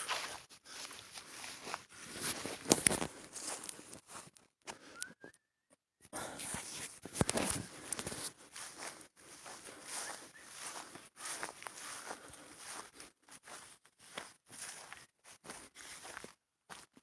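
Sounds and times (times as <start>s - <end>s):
crunching footsteps: 0.0s - 4.9s, 6.2s - 17.0s
faint whistled note: 4.9s - 5.6s.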